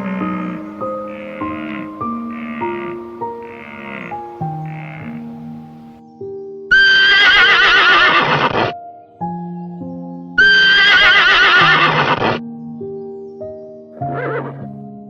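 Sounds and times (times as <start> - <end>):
horse whinnying: 0.0 - 5.3, 6.7 - 8.6, 10.4 - 12.3, 14.1 - 14.6
music of sustained notes: 0.0 - 15.0.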